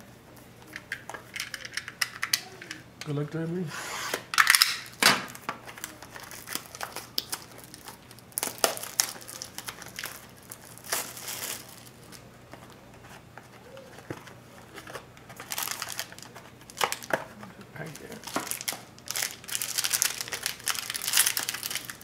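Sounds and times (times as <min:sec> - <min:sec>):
plastic seal tearing and crinkling: 0:04.4 - 0:12.2, 0:13.9 - 0:22.0.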